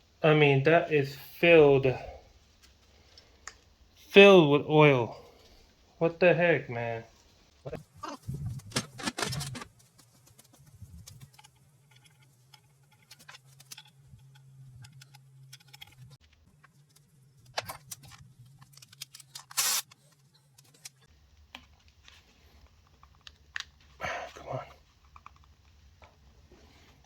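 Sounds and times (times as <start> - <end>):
metal clatter: 8.6 - 9.7.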